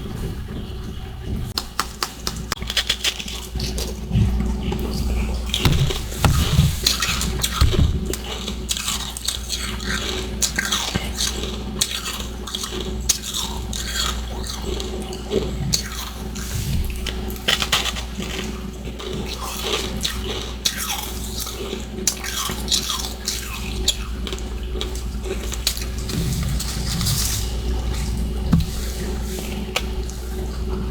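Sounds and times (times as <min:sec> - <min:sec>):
steady low hum: 0:04.0 - 0:08.3, 0:23.7 - 0:30.9.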